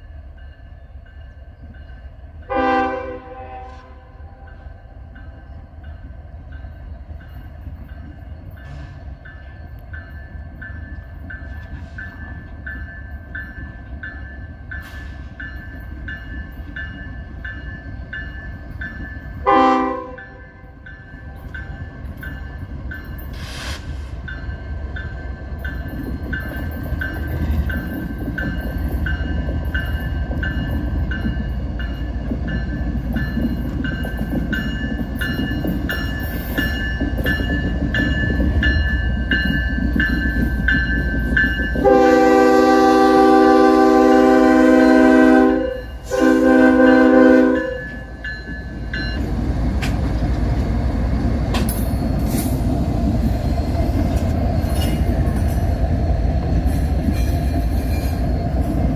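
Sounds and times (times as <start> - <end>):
locomotive bell ringing: 0.0 - 23.5, 24.2 - 49.6, 51.4 - 58.9
locomotive horn blast: 2.5 - 4.5, 19.4 - 20.6, 41.8 - 48.1.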